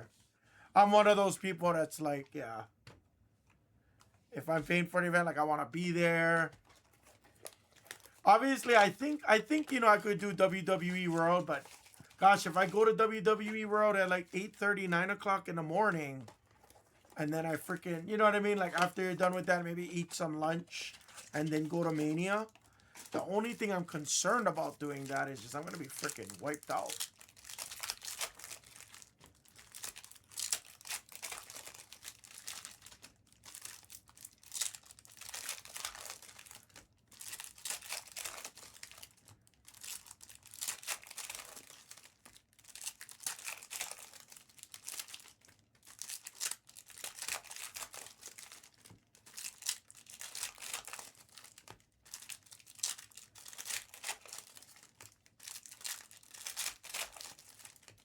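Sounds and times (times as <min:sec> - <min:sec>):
card pack wrappers crinkling: 0:05.7 - 0:58.0.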